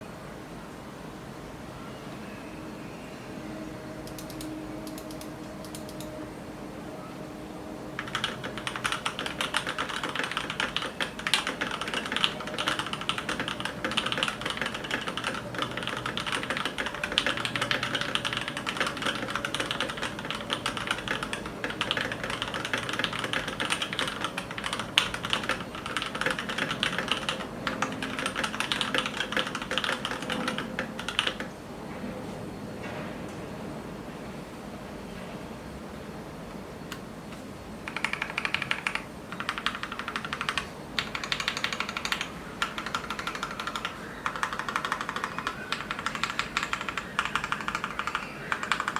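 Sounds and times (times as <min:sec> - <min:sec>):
mechanical keyboard typing: 0:04.0 - 0:06.1, 0:08.0 - 0:31.5, 0:37.8 - 0:48.9.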